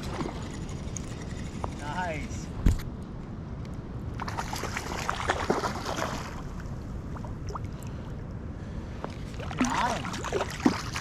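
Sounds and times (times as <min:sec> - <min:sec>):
river water splashing: 0:04.2 - 0:07.8, 0:09.1 - 0:11.0.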